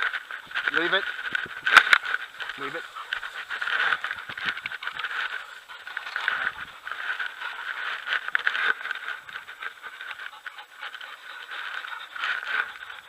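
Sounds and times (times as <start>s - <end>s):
rustling and scraping: 0.0s - 13.0s
small irregular clicks: 0.0s - 13.0s
steady high hiss: 0.0s - 13.0s.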